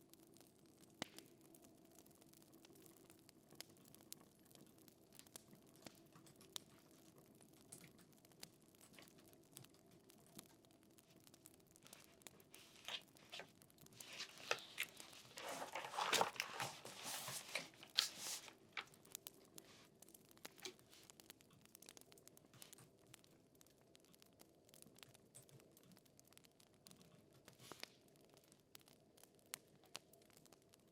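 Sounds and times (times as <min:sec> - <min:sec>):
paper rustling and crinkling: 0:11.9 - 0:19.9.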